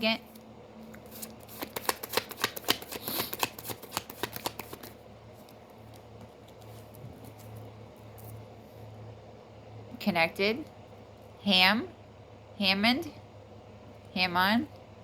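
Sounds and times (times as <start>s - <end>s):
cards being shuffled: 0.3s - 7.6s.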